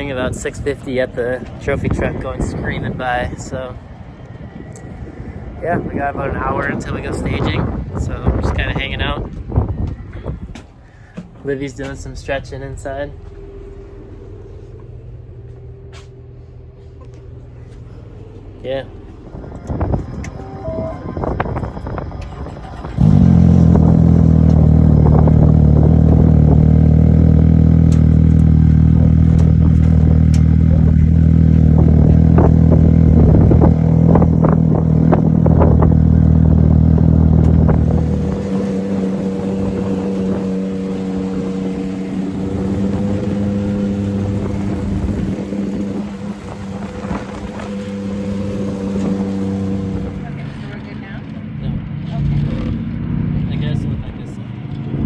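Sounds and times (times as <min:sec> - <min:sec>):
race vehicle engine running: 0:00.0 - 0:55.0.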